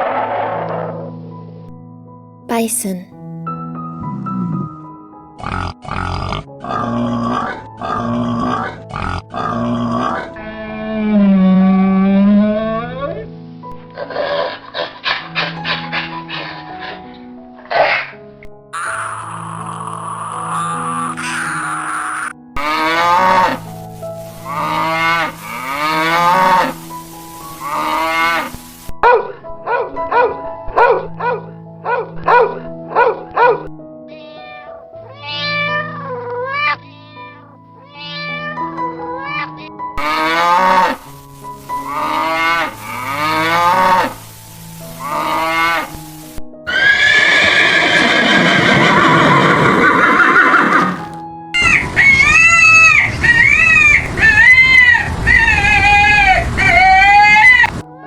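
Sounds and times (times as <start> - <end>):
background music: 0.0 - 58.0
dog barking: 17.7 - 18.1, 29.0 - 33.6, 51.6 - 55.6
cow mooing: 18.8 - 23.6, 24.5 - 26.8, 41.9 - 44.2, 46.7 - 54.3
farm animal calls: 46.7 - 57.8.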